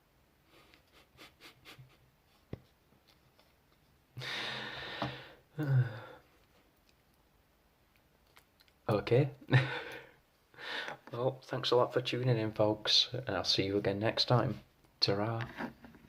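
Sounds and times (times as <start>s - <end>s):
breathy exhale: 4.2s - 6.2s
person humming mm: 5.6s - 6.2s.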